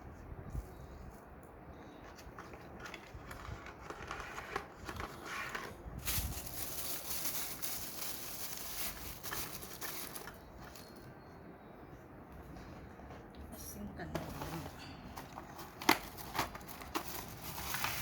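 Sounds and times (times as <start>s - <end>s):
packaging crinkling and rustling: 2.0s - 11.1s, 14.2s - 18.0s.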